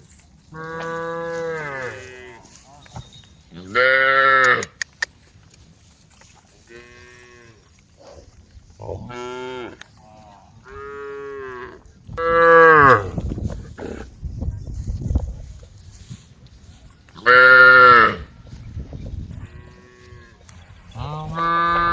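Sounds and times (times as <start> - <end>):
cows mooing: 0.5 - 2.6, 21.0 - 21.9.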